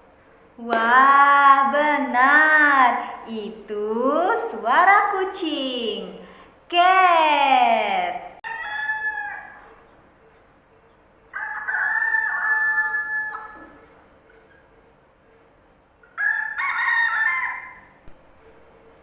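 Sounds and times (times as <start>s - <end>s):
rooster crowing: 8.4s - 9.8s, 11.3s - 14.1s, 16.1s - 18.0s.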